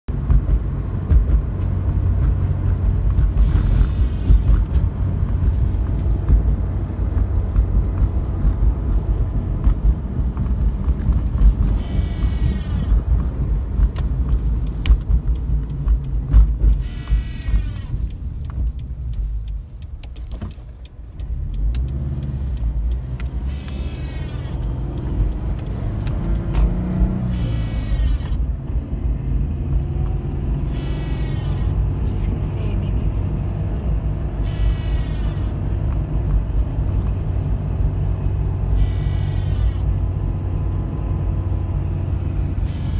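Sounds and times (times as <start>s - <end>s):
car engine low rumble: 0.0s - 42.9s.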